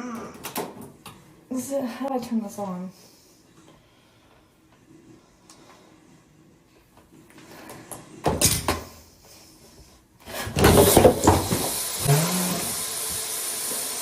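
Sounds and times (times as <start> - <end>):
hard objects banging and clattering: 10.4 - 12.6.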